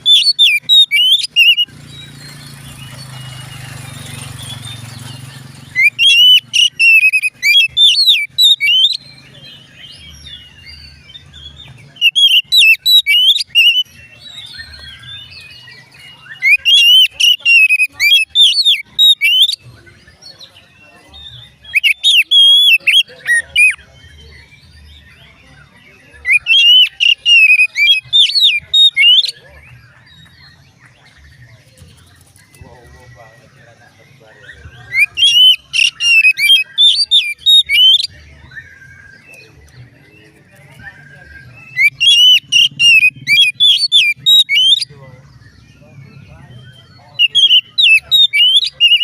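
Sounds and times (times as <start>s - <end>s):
bird singing whistled phrases: 0.0s - 2.5s, 5.7s - 9.1s, 11.9s - 19.6s, 21.2s - 24.6s, 26.2s - 29.4s, 34.4s - 39.8s, 41.2s - 49.0s.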